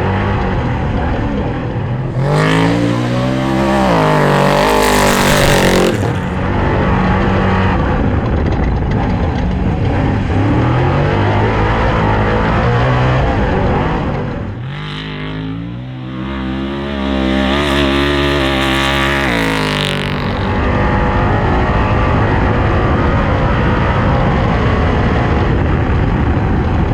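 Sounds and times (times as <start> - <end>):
race car engine revving: 1.0 - 8.4, 9.9 - 21.1.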